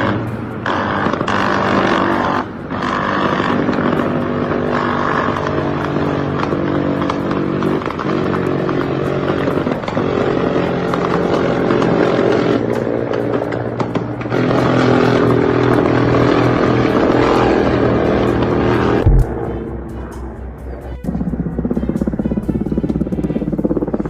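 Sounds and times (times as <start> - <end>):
motor droning: 13.4 - 24.0.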